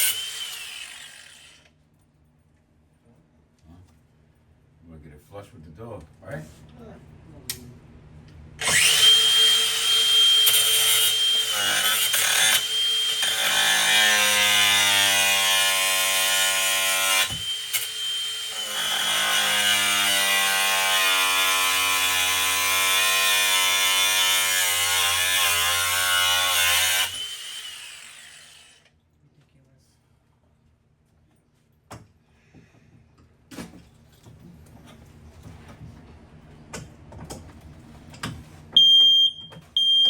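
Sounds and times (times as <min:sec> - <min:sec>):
electric power tool whining: 0:00.0 - 0:01.7, 0:08.6 - 0:19.4, 0:23.6 - 0:28.8.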